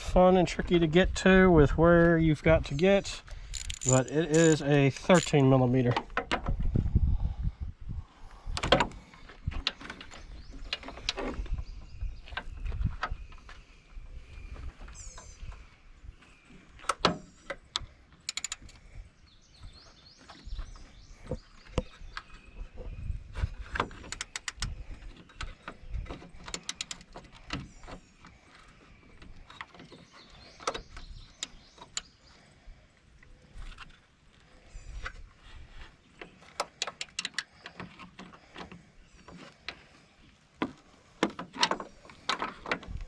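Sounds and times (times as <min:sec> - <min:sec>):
socket wrench ratchet clicks: 0:03.5 - 0:05.4, 0:18.3 - 0:18.8
metal clicks and knocks: 0:03.6 - 0:06.5.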